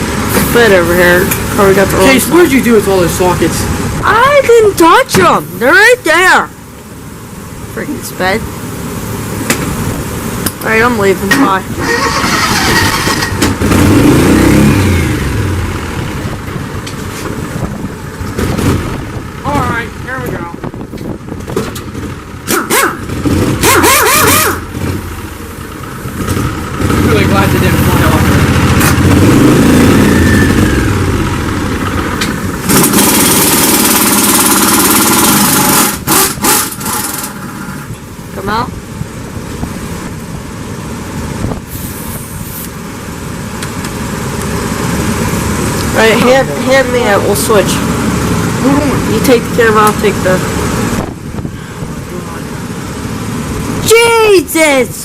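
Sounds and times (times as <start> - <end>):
small vehicle engine revving: 9.0 - 20.6, 21.2 - 38.6, 41.1 - 54.0
impact wrench rattling: 32.7 - 37.5.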